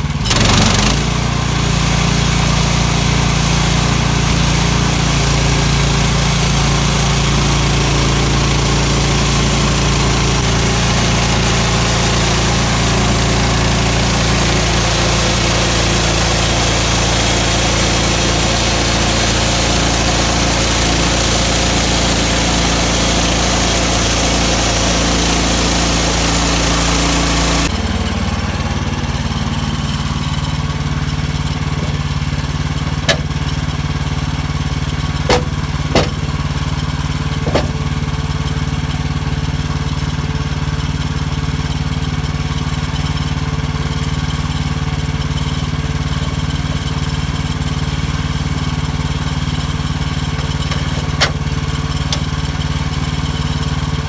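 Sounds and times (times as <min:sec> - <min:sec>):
small gas engine running: 0:00.0 - 0:54.0
sharp knocks: 0:33.1 - 0:33.4, 0:35.3 - 0:36.4, 0:37.4 - 0:38.0.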